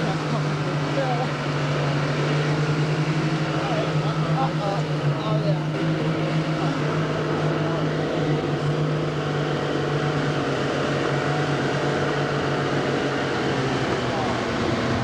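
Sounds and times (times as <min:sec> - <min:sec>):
boat engine droning: 0:10.1 - 0:15.0.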